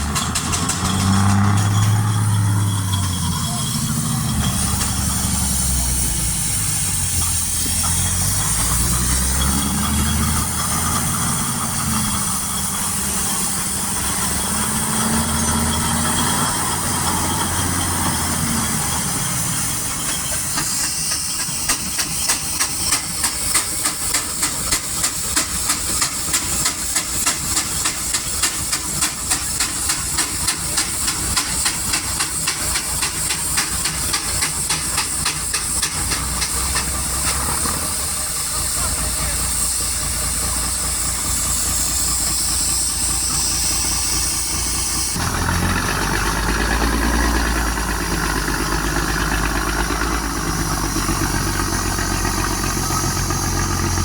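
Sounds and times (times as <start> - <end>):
low engine drone: 0.0 - 21.2
steam exhaust chuffing: 0.0 - 54.0
steam hissing: 0.0 - 54.0.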